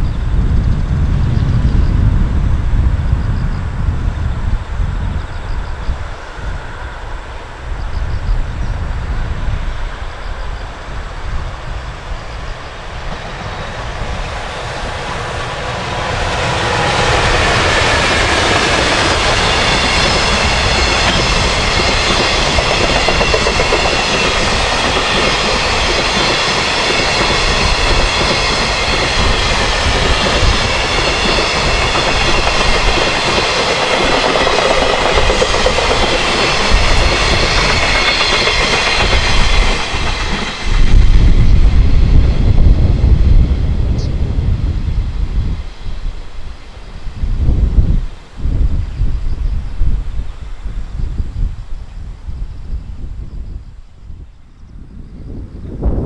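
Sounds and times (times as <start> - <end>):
freight train passing: 0.0 - 56.0
strong wind buffeting microphone: 0.0 - 56.0.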